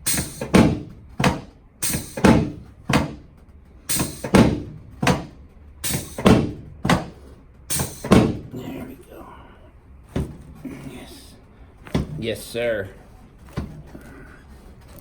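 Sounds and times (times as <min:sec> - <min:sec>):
drop table thudding: 0:00.0 - 0:03.3, 0:03.9 - 0:08.7, 0:10.1 - 0:10.7, 0:11.8 - 0:12.3.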